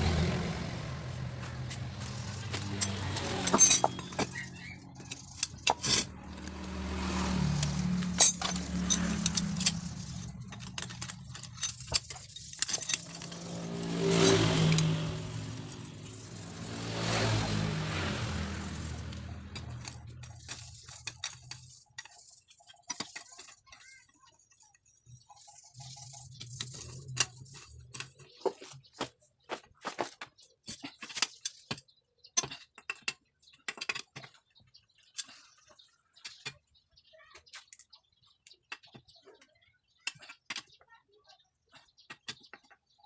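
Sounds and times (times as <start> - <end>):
road vehicles passing: 0.0 - 22.6
metallic clinks of tools: 2.0 - 6.1, 7.7 - 16.4.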